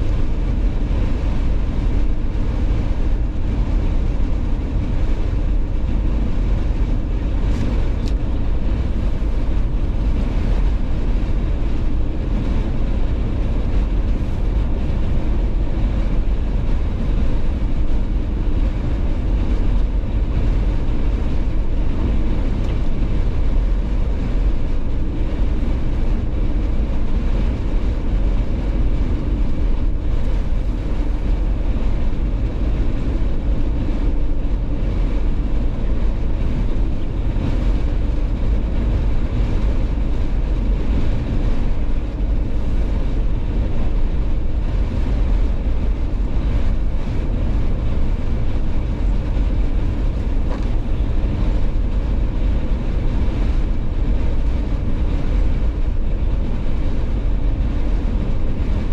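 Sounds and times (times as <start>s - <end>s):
car engine and tyres rumbling: 0.0s - 58.9s.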